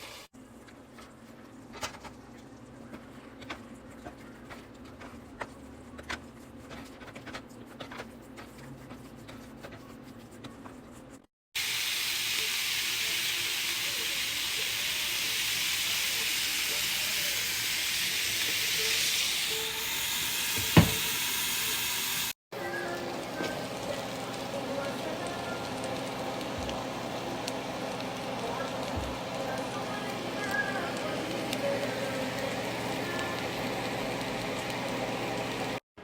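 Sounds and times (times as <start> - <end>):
food sizzling in a pan: 0.0 - 0.3, 11.6 - 35.8.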